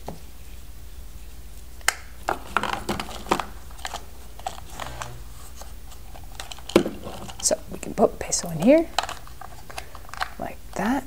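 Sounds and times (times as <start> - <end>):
plastic toy parts clicking: 5.9 - 7.6, 8.5 - 10.9.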